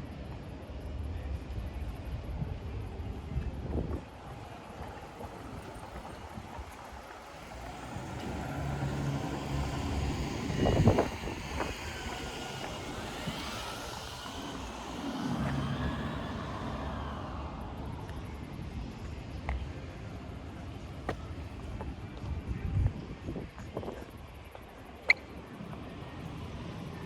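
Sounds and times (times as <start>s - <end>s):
motor vehicle engine passing: 4.4s - 19.0s.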